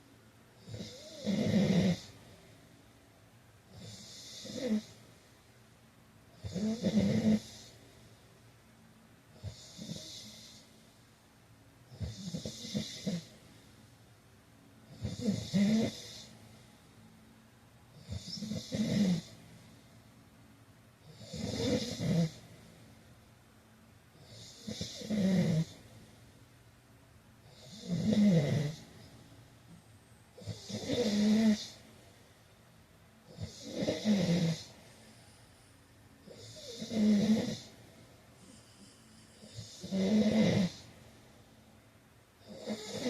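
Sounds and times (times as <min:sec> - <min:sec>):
quiet breaths: 0:00.0 - 0:43.0
man snoring: 0:00.6 - 0:02.2, 0:03.7 - 0:05.0, 0:06.4 - 0:07.7, 0:09.4 - 0:10.6, 0:12.0 - 0:13.3, 0:14.9 - 0:16.3, 0:18.0 - 0:19.3, 0:21.0 - 0:22.4, 0:24.2 - 0:25.8, 0:27.5 - 0:28.8, 0:30.4 - 0:31.8, 0:33.3 - 0:34.7, 0:36.2 - 0:37.7, 0:38.8 - 0:40.9, 0:42.4 - 0:43.0.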